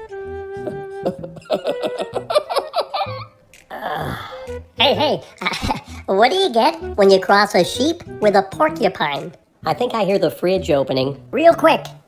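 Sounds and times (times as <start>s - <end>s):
light background music: 0.0s - 12.0s
person laughing: 0.6s - 4.4s, 5.0s - 6.2s.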